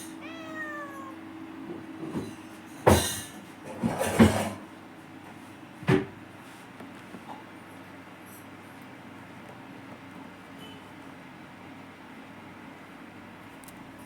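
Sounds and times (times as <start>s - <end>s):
cat meowing: 0.0s - 1.4s.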